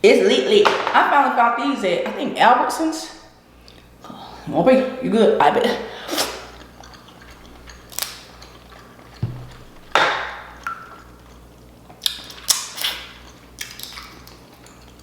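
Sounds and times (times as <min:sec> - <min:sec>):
crab shells cracking: 0:06.6 - 0:14.8
dull thump: 0:09.2 - 0:10.3.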